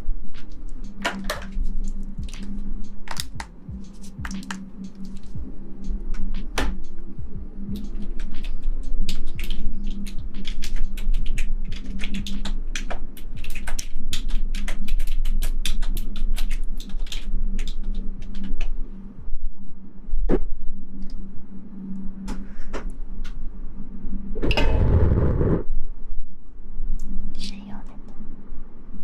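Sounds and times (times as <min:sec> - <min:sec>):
steady low hum: 0:00.0 - 0:29.0
sharp clicking and tapping: 0:00.4 - 0:07.0.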